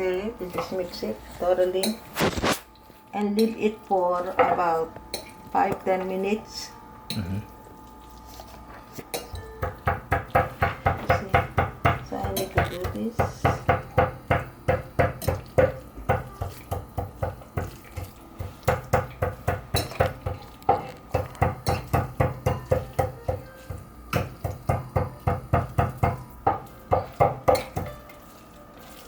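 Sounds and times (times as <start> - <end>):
meat squelching in marinade: 7.4 - 29.0.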